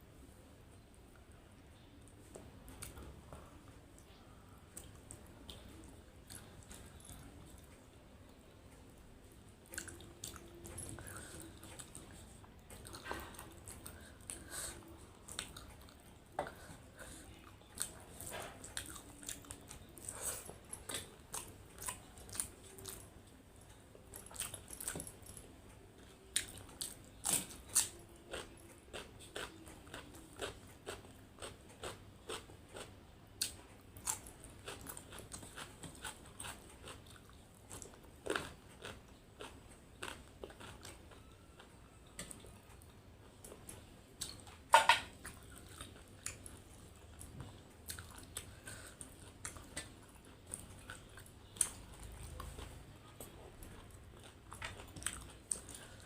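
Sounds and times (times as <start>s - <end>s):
person chewing and crunching food: 2.2s - 7.9s, 9.3s - 56.0s.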